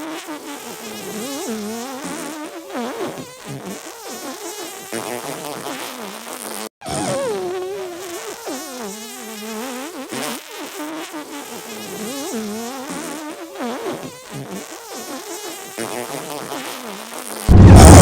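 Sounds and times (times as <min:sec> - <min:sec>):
pitch-warped fart sounds: 0:06.8 - 0:07.4, 0:17.5 - 0:18.0.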